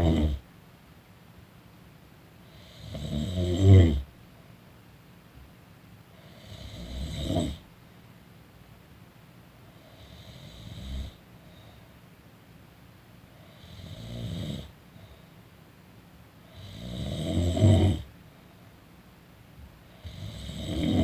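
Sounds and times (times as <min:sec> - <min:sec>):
person snoring: 0:00.0 - 0:00.4, 0:02.5 - 0:04.0, 0:06.3 - 0:07.6, 0:16.6 - 0:18.1, 0:20.0 - 0:21.0.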